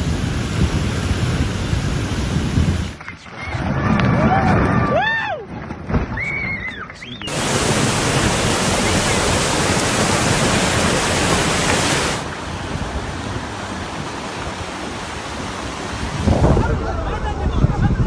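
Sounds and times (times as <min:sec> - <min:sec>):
rushing floodwater: 0:07.1 - 0:18.0.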